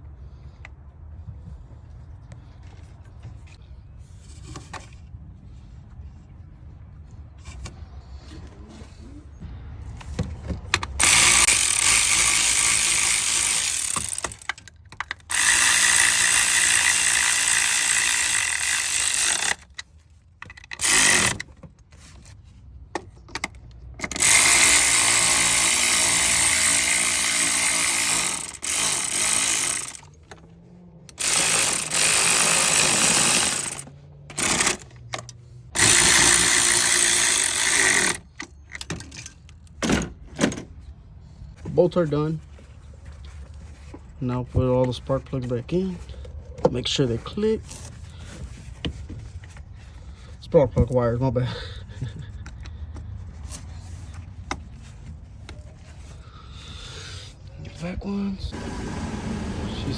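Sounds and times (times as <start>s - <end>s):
cordless power tool whining: 10.9s - 14.6s, 15.2s - 19.7s, 20.7s - 21.5s, 24.1s - 30.2s, 31.1s - 34.9s, 35.8s - 38.3s, 58.5s - 59.9s.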